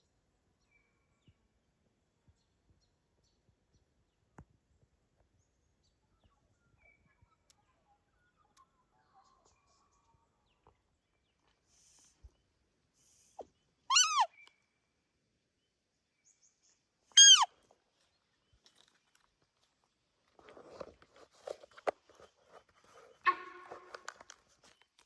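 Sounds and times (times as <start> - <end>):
deer alarm honks: 13.9 - 14.3, 17.2 - 17.5
rustling and crunching: 18.0 - 25.0.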